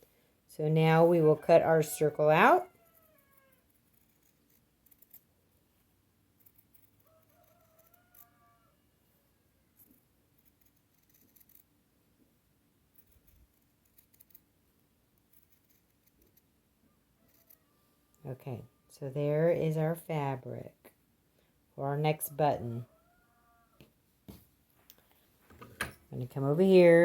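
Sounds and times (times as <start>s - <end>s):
scissors cutting fabric: 2.9s - 5.3s, 6.4s - 8.3s, 9.8s - 11.7s, 12.9s - 14.5s, 15.2s - 16.5s.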